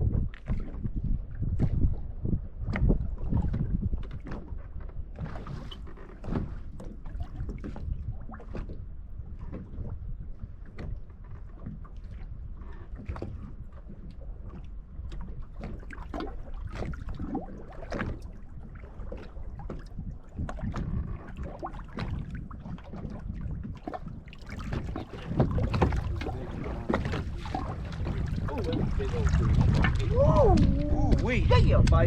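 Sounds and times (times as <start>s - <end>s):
low water noise: 0.0s - 32.0s
wind on microphone: 0.0s - 32.0s.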